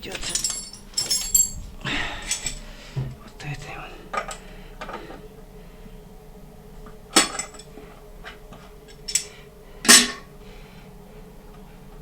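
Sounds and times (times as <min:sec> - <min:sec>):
metal tools clinking: 0:00.0 - 0:04.4.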